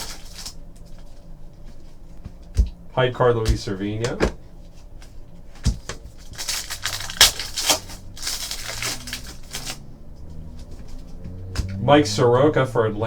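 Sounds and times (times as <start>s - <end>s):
cards and wrappers rustling: 0.0s - 2.8s, 3.4s - 11.8s.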